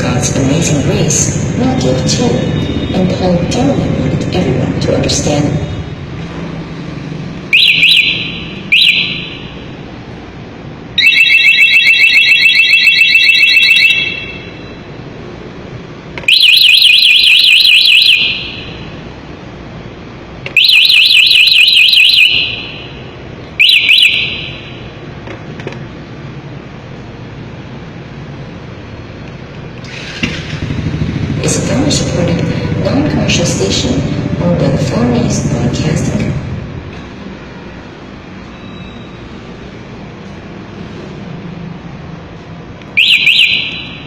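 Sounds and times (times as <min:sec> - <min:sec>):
scooter alarm siren tones: 0:07.5 - 0:09.7, 0:11.0 - 0:14.9, 0:16.2 - 0:18.8, 0:20.6 - 0:23.0, 0:23.6 - 0:24.8, 0:43.0 - 0:44.0.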